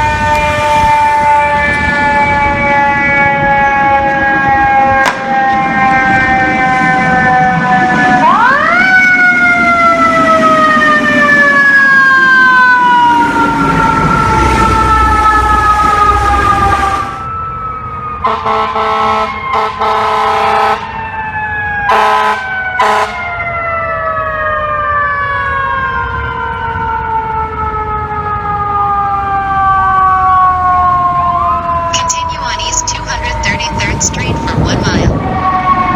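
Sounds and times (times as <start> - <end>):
air horn blasts: 21.9 - 23.2.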